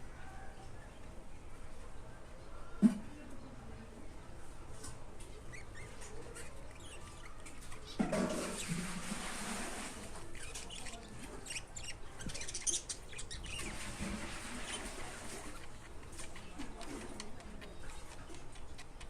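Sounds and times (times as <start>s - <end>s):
birds chirping: 0.0s - 19.0s
wings flapping: 12.2s - 19.0s.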